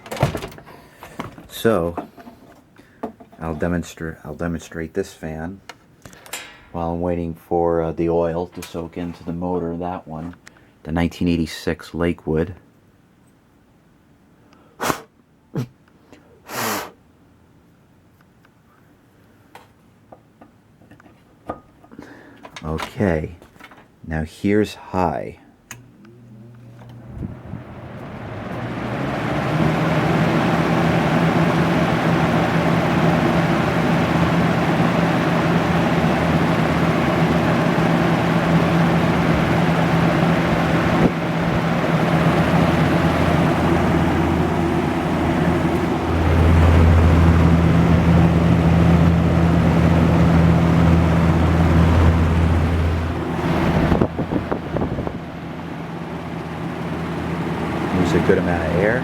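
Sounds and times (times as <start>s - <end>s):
fan motor hum: 0.0s - 12.6s, 21.5s - 59.0s
air buffeting microphone: 26.1s - 55.4s.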